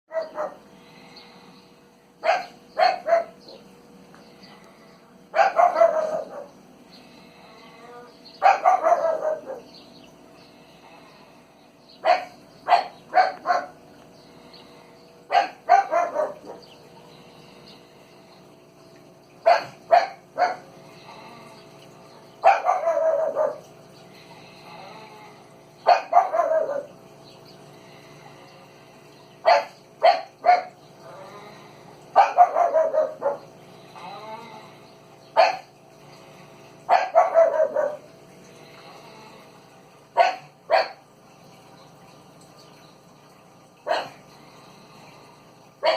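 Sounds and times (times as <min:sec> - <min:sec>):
animal barking calls: 0:00.1 - 0:01.1, 0:02.2 - 0:03.8, 0:04.4 - 0:10.0, 0:10.8 - 0:14.0, 0:14.6 - 0:16.9, 0:19.4 - 0:27.1, 0:29.4 - 0:35.8, 0:36.8 - 0:38.2, 0:40.1 - 0:41.2, 0:43.8 - 0:44.4
faint steady hum: 0:00.1 - 0:45.9.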